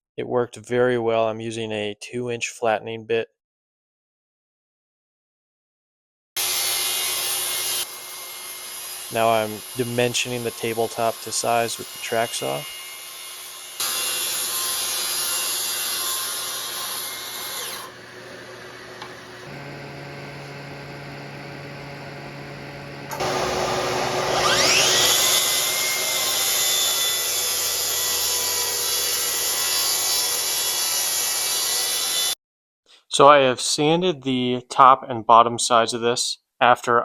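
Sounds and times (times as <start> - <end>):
saw cutting wood: 6.4 - 32.4
motor spinning up with whine: 17.6 - 29.6
steady hum: 19.0 - 25.2.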